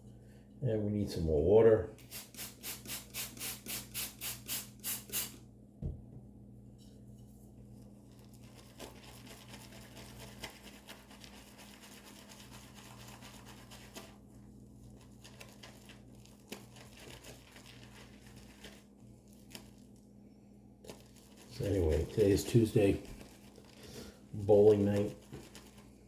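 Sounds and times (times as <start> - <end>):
low electrical hum: 0.0 - 26.0
shaving brush whisking lather: 2.0 - 5.3, 8.0 - 20.1, 20.8 - 26.0.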